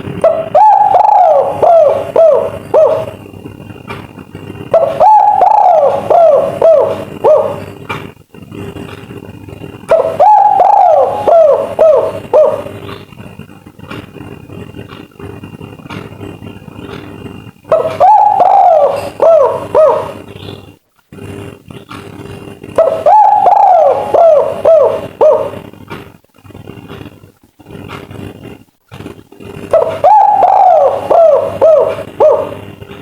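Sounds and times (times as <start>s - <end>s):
dove cooing: 0.0s - 3.8s, 4.4s - 7.9s, 9.8s - 13.2s, 17.7s - 20.5s, 22.7s - 25.8s, 29.6s - 32.7s
steady noisy background: 0.0s - 33.0s
scattered clicks: 12.7s - 18.0s.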